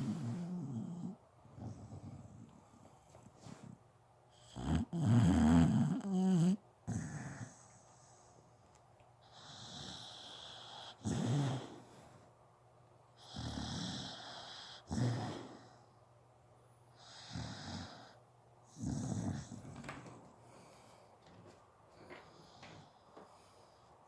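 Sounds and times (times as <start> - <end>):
dog snoring: 0.0 - 2.5, 3.4 - 8.3, 9.2 - 12.2, 13.2 - 15.8, 17.0 - 20.7.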